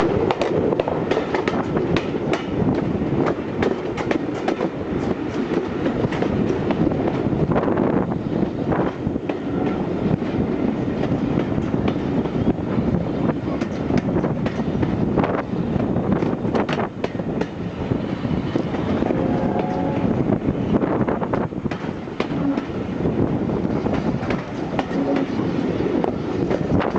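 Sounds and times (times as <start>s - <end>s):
wheels clicking over rail joints: 0.0s - 7.3s
steam train rumbling: 0.0s - 26.9s.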